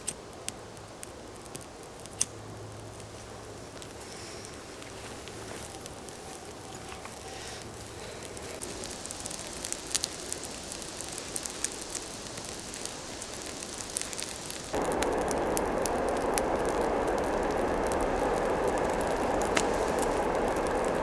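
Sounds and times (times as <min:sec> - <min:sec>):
campfire crackling and popping: 0:00.0 - 0:21.0
steady rushing noise: 0:08.6 - 0:21.0.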